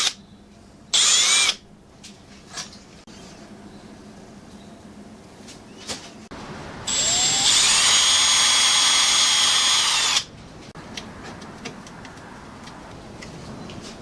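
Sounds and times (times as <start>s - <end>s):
power tool motor whine: 6.9s - 10.3s.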